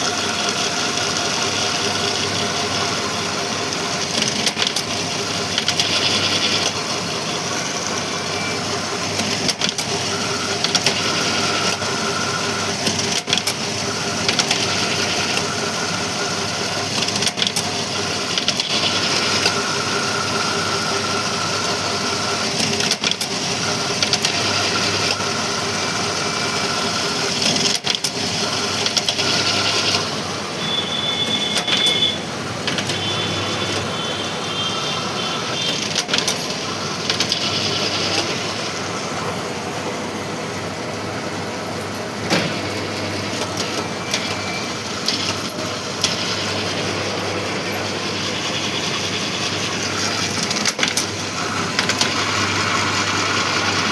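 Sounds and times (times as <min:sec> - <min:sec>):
strapping machine humming and whining: 0:00.0 - 0:53.9
sharp machine clicks: 0:00.3 - 0:08.1, 0:09.1 - 0:15.6, 0:16.6 - 0:19.6, 0:21.0 - 0:25.3, 0:26.0 - 0:30.1, 0:31.2 - 0:34.0, 0:35.4 - 0:38.6, 0:43.2 - 0:46.9, 0:47.8 - 0:53.9.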